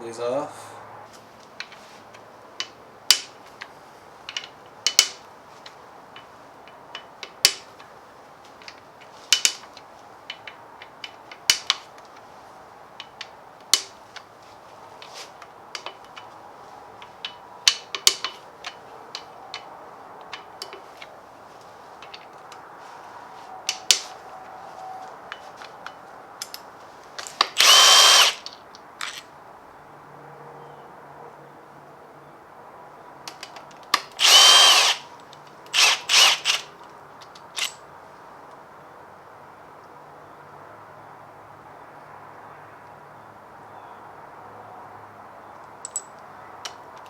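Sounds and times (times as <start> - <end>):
metallic clicks and clinks: 27.2 - 29.3, 34.2 - 37.8, 45.8 - 46.2.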